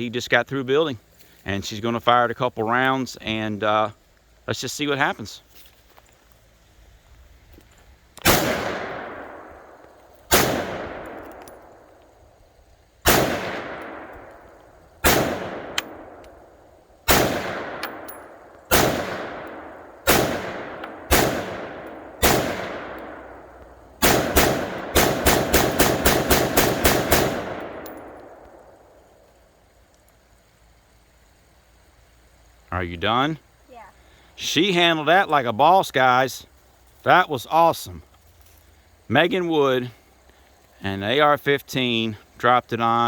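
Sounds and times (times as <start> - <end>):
rifle shots echoing: 8.2 - 11.9, 13.0 - 16.5, 17.1 - 29.0.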